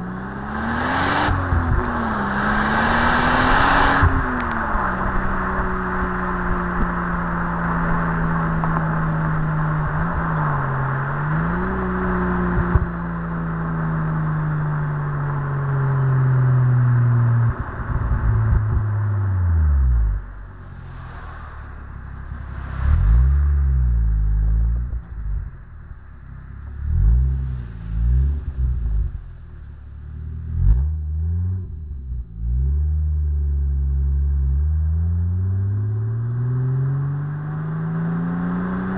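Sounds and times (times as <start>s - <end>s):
car engine revving: 0.0s - 38.9s.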